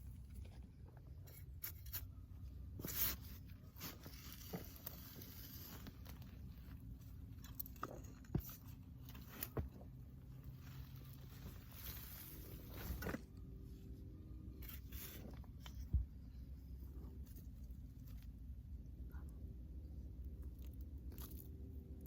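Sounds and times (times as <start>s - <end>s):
digging in soil: 0.0s - 22.0s.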